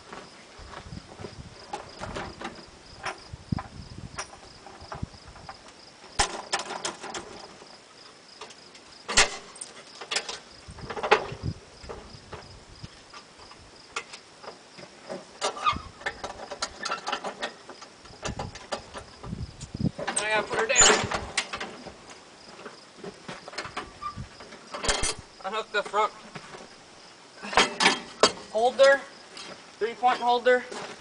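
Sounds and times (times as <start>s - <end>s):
metallic clanks and knocks: 6.2s - 7.6s, 8.4s - 12.4s, 14.0s - 19.3s, 20.0s - 22.0s, 23.5s - 25.2s, 27.5s - 28.5s.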